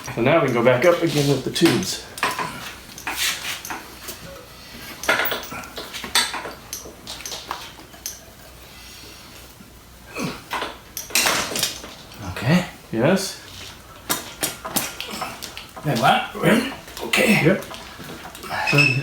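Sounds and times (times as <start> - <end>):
metal clinking and knocking: 0.0 - 8.2.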